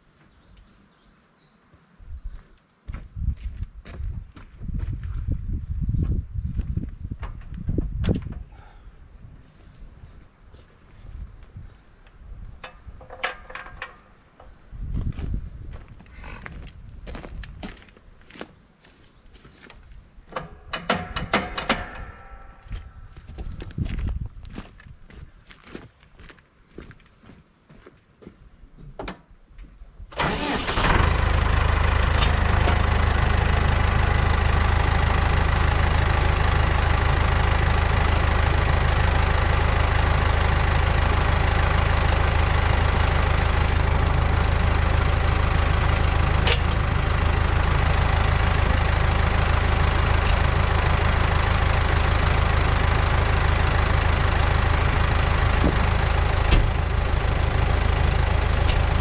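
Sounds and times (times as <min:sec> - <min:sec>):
vehicle engine starting and running: 0:30.1 - 0:59.0.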